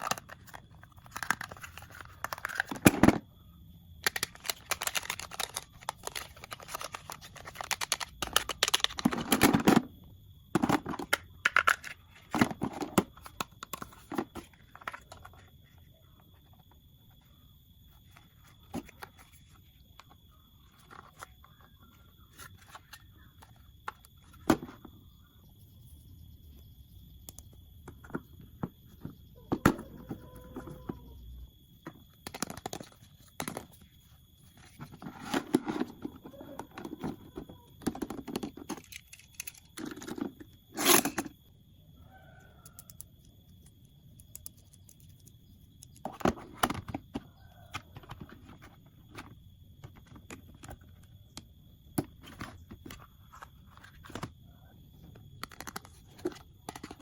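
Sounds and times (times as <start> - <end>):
plastic and card crinkling: 0.0 - 3.0, 4.0 - 9.4.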